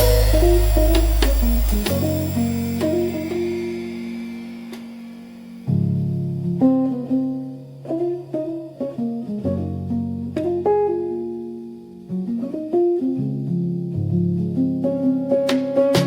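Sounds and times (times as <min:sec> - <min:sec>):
low bass notes: 0:00.0 - 0:04.2
plucked guitar: 0:00.0 - 0:16.0.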